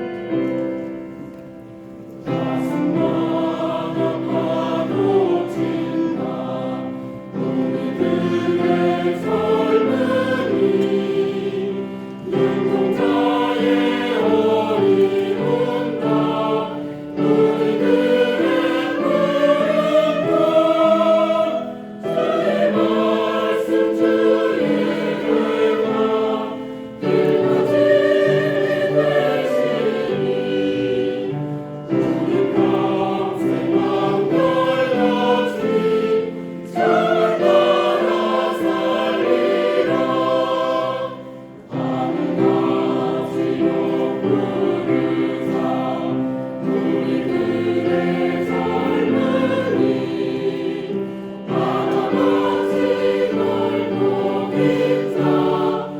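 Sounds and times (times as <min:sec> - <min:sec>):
choir singing a hymn: 0:00.0 - 0:55.9.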